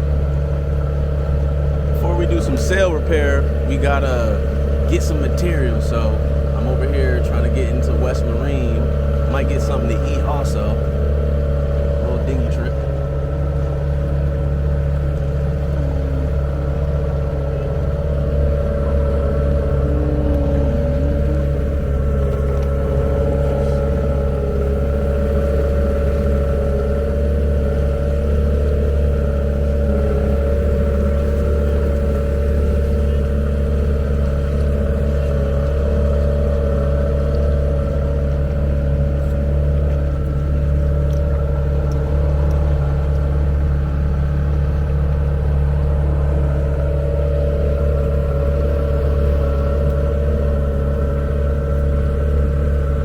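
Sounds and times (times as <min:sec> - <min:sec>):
outboard motor running: 0:00.0 - 0:53.0.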